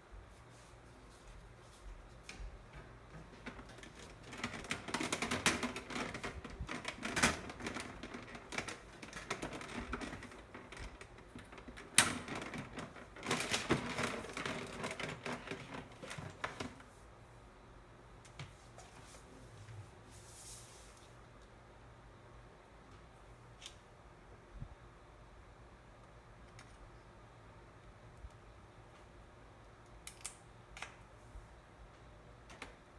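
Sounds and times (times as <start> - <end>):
plastic parts clicking and rattling: 3.2 - 16.8.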